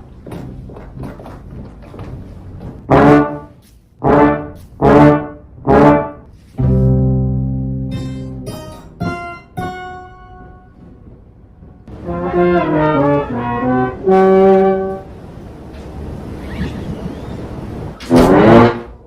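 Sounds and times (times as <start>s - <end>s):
comic trombone notes: 2.9s - 10.8s, 11.9s - 15.2s, 18.0s - 19.0s.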